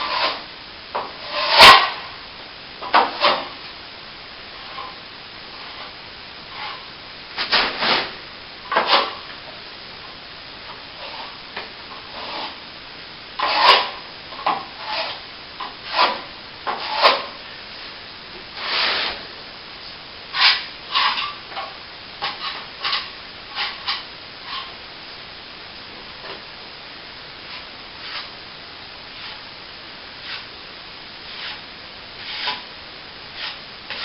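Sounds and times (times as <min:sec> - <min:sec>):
blade scraping plaster wall: 0:00.0 - 0:02.1, 0:02.8 - 0:03.6, 0:07.5 - 0:09.3, 0:11.0 - 0:12.6, 0:13.4 - 0:17.4, 0:18.6 - 0:19.2, 0:20.3 - 0:24.7, 0:27.4 - 0:28.3, 0:29.1 - 0:29.5, 0:30.2 - 0:30.5, 0:31.2 - 0:31.6, 0:32.2 - 0:32.7, 0:33.3 - 0:34.0.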